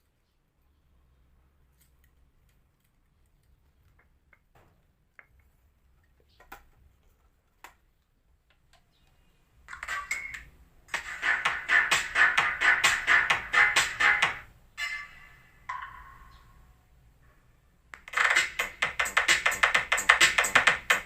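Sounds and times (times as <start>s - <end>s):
loud music through speaker: 10.9s - 14.5s, 18.1s - 21.0s.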